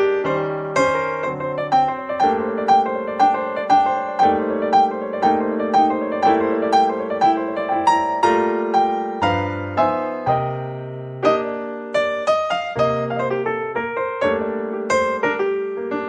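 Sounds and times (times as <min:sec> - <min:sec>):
calm piano music: 0:00.0 - 0:16.0.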